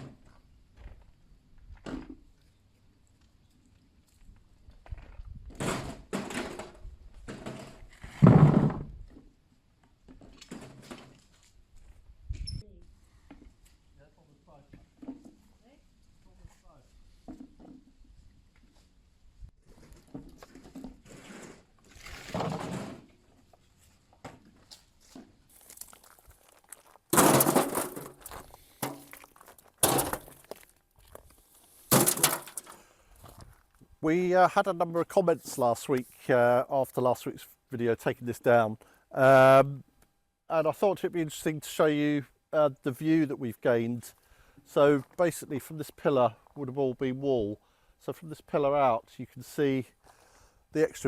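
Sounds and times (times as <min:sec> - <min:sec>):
irregular clunks and scrapes: 0:04.8 - 0:09.2, 0:19.6 - 0:25.4
rubble crunching and clattering: 0:19.6 - 0:33.9.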